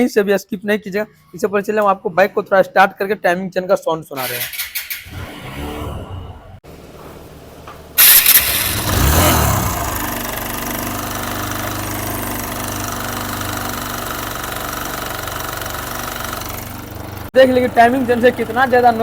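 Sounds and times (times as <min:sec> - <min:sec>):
motorcycle engine starting and idling: 0:04.3 - 0:05.9, 0:06.6 - 0:19.0
motorcycle engine revving: 0:04.5 - 0:07.3, 0:07.9 - 0:19.0.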